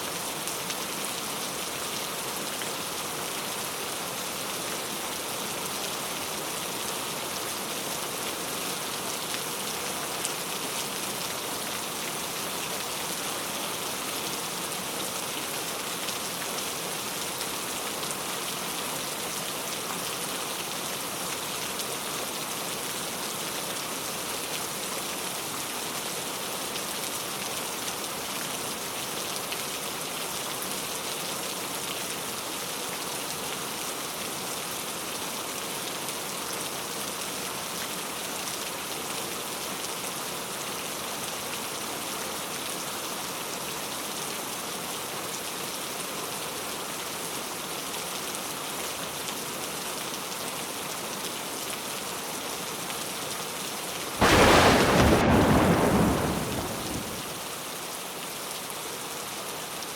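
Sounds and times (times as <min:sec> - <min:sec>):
steady rain falling: 0:00.0 - 0:33.9, 0:52.9 - 0:57.8.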